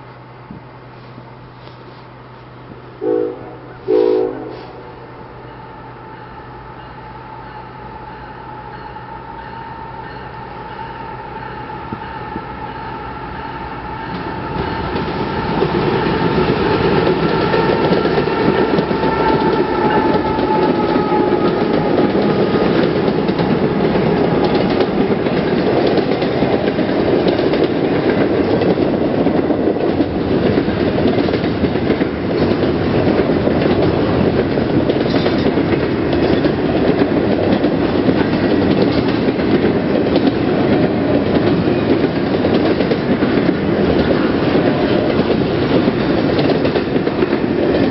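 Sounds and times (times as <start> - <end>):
freight train rolling past: 0.0 - 47.9
wheels clacking over rail joints: 14.0 - 47.9.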